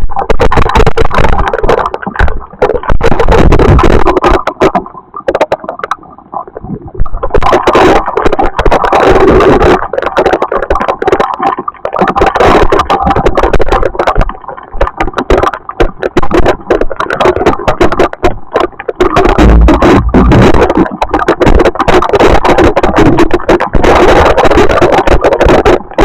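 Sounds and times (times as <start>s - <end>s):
steady rushing noise: 0.0s - 26.0s.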